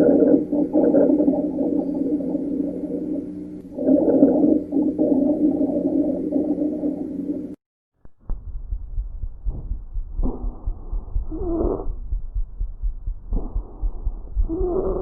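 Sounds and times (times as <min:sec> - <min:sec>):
low dull thuds: 0:08.1 - 0:15.0
low-pitched wheeze through stethoscope: 0:10.9 - 0:12.0, 0:13.3 - 0:15.0.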